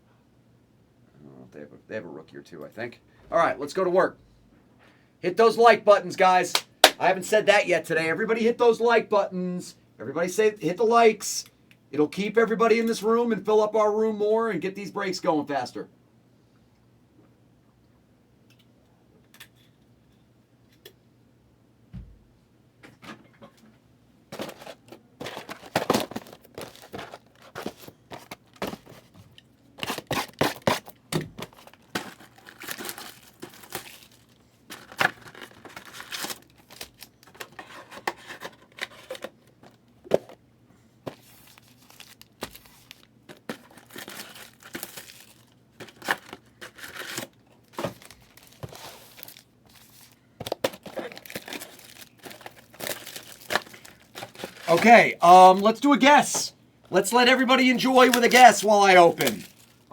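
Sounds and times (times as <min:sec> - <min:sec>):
plastic wrappers tearing and crinkling: 0:24.4 - 0:29.0, 0:29.8 - 0:37.6, 0:41.2 - 0:54.8, 0:57.8 - 0:59.9.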